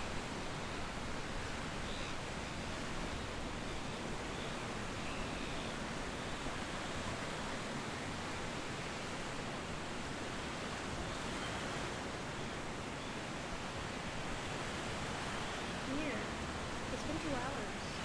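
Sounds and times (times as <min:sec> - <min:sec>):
ocean surf rushing: 0:09.3 - 0:18.0.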